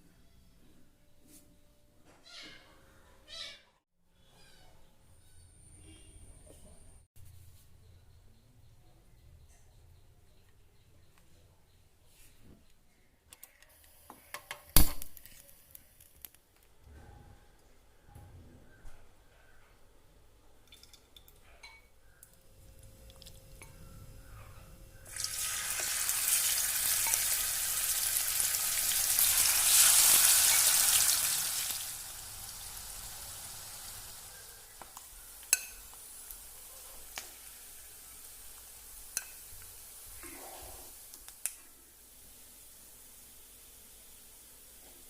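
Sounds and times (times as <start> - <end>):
food frying in hot oil: 25.1 - 45.0.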